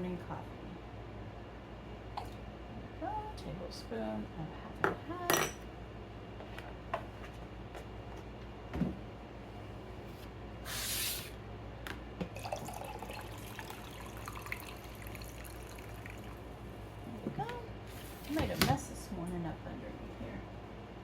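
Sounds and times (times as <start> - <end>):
tap water running: 12.2 - 16.5.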